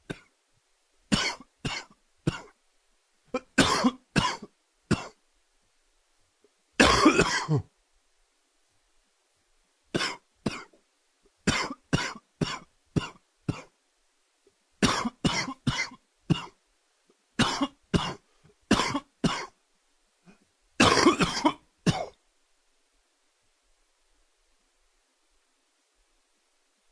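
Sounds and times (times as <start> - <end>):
man coughing: 3.4 - 5.2, 6.8 - 7.7, 20.3 - 22.2.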